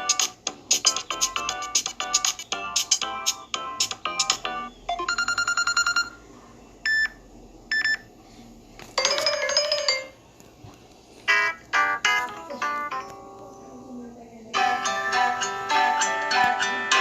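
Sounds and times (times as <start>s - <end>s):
melodic ringtone: 0.0s - 6.2s, 9.0s - 10.2s, 11.3s - 13.5s, 14.6s - 17.0s.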